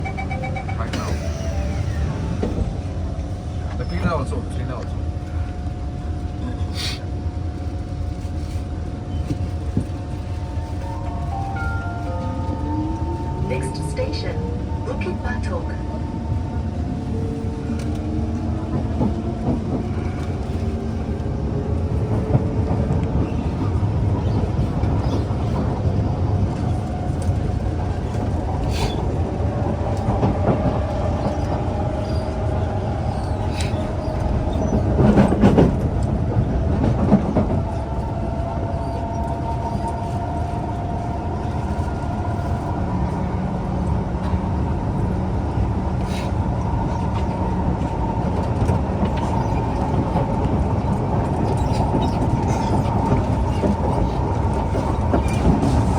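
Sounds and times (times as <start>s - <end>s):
train motors whining: 0.0s - 3.8s
train rumble: 0.0s - 55.9s.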